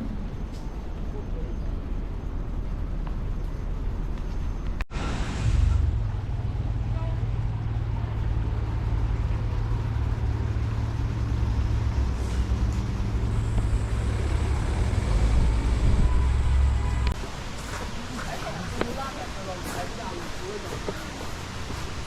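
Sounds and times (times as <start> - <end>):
vehicle engine droning: 0.0 - 17.4
road noise: 0.0 - 22.0.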